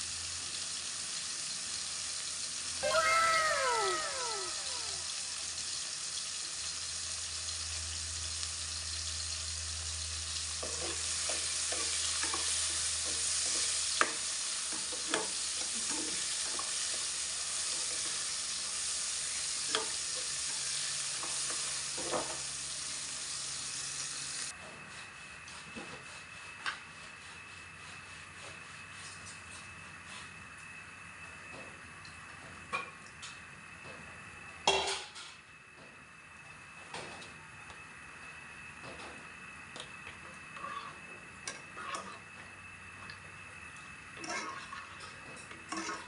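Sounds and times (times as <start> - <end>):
clams sizzling in a pan: 0.0 - 24.5.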